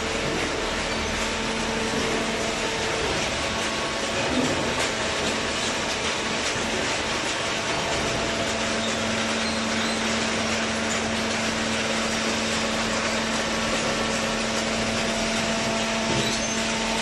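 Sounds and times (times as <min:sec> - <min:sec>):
electric motor and pump humming: 0:00.0 - 0:17.0.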